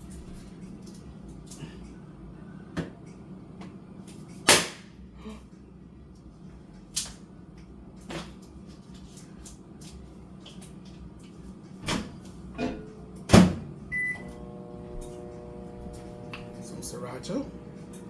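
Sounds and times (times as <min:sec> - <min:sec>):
low steady hum: 0:12.5 - 0:18.0.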